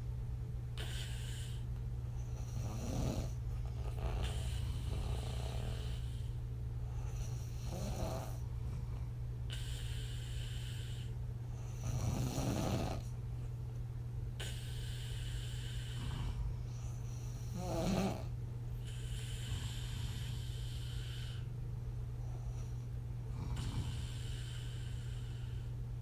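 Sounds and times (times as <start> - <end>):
woman snoring: 0.8 - 1.6, 2.2 - 8.4, 9.5 - 13.1, 14.4 - 21.5, 23.3 - 25.7.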